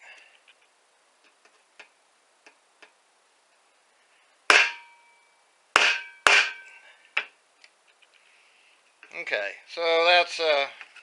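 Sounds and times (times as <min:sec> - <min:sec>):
mallet striking knife into metal: 0:04.5 - 0:05.1, 0:05.8 - 0:06.7.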